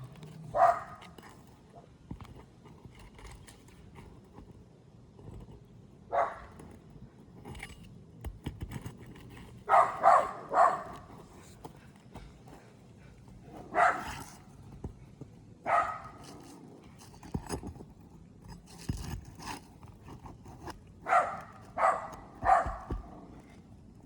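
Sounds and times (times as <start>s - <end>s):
faint clicks and scrapes: 0.0s - 24.0s
dog barking: 0.5s - 1.1s, 6.1s - 6.6s, 9.7s - 11.2s, 13.5s - 14.3s, 15.6s - 16.3s, 21.0s - 23.3s.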